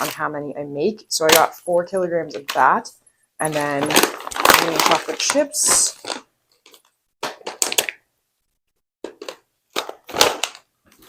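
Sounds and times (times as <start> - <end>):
packaging crackling and crinkling: 3.4 - 8.0, 9.0 - 11.0.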